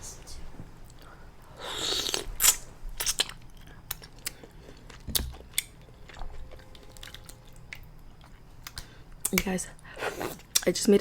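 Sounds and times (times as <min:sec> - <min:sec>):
person chewing food: 0:01.7 - 0:09.3.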